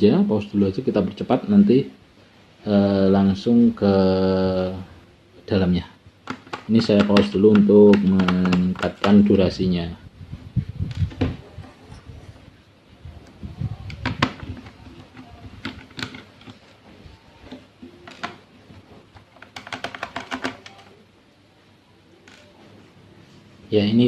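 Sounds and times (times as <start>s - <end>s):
screwdriver clicking on plastic: 6.2s - 9.4s, 13.9s - 16.7s, 17.5s - 18.5s, 19.1s - 20.9s.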